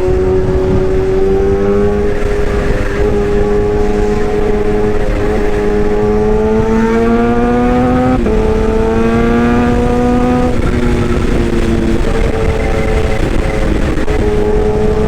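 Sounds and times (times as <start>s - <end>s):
excavator engine rumble with whine: 0.0s - 15.0s.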